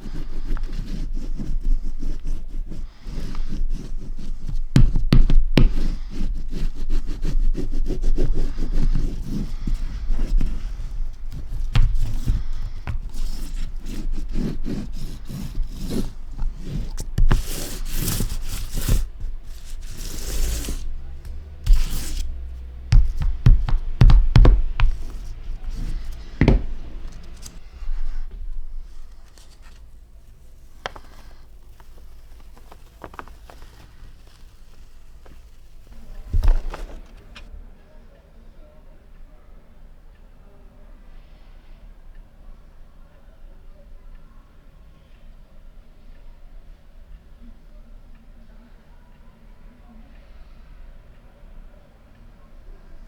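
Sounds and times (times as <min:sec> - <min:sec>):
paper rustling: 0:00.0 - 0:37.5
hand tools knocking and scraping: 0:09.3 - 0:27.6.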